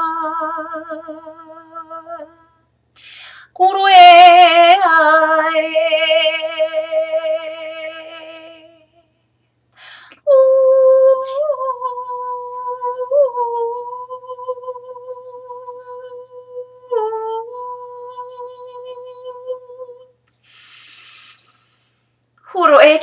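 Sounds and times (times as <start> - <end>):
breath: 3.0 - 3.5, 9.7 - 10.2, 20.3 - 22.2
woman humming a steady note: 10.3 - 20.1.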